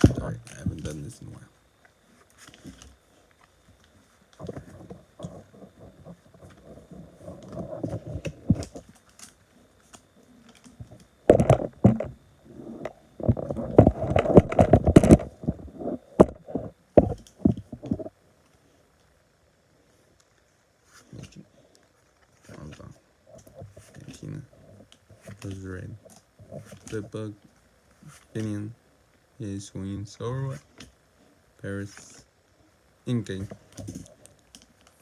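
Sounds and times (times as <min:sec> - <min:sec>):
handling rustling and clicks: 0:01.8 - 0:12.2, 0:12.8 - 0:19.1, 0:33.3 - 0:35.0
knocks and thumps: 0:10.8 - 0:12.2, 0:12.8 - 0:18.1.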